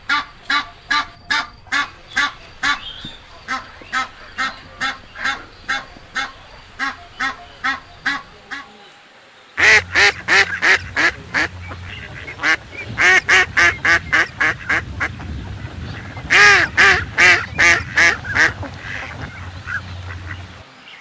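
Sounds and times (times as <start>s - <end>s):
waterfowl calling: 0.0s - 21.0s
low hum: 9.6s - 20.6s.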